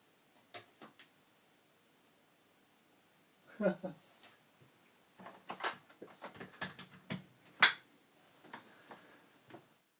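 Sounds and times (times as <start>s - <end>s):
hands clicking and knocking on computer: 5.2s - 7.8s.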